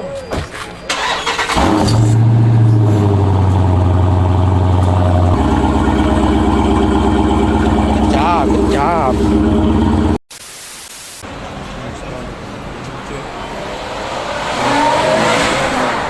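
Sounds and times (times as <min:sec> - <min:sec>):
car engine starting and idling: 0:00.8 - 0:10.2.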